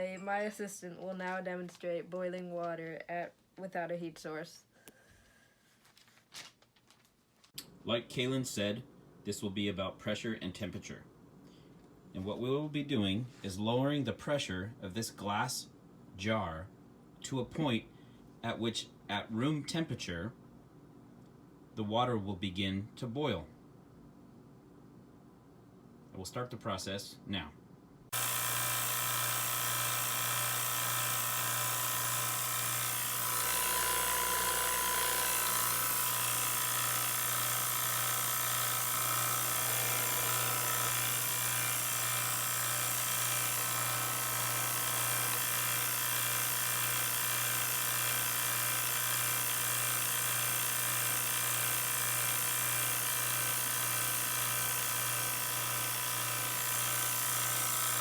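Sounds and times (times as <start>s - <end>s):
vacuum pump motor drone: 28.2s - 58.0s.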